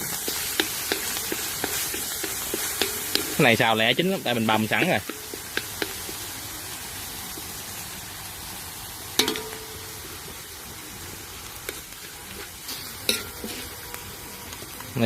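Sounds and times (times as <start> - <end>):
meat sizzling in a hot pan: 0.0 - 15.0
spatula clanking on pan: 0.2 - 3.4, 9.2 - 10.0, 13.0 - 13.6.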